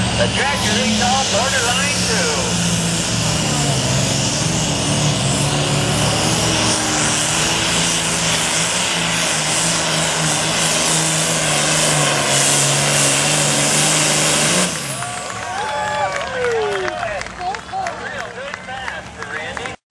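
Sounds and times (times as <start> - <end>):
tractor engine running at high revs: 0.0 - 15.8.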